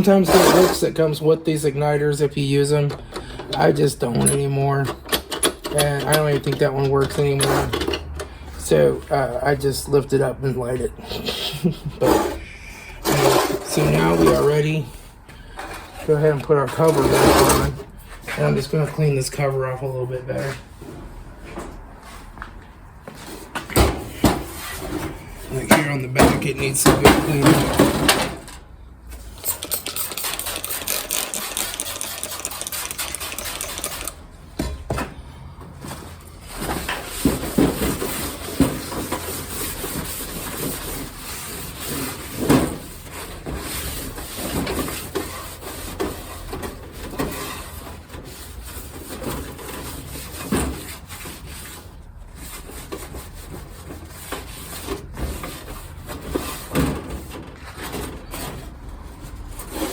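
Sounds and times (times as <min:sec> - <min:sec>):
scrubbing heater cover: 0:29.2 - 0:34.3.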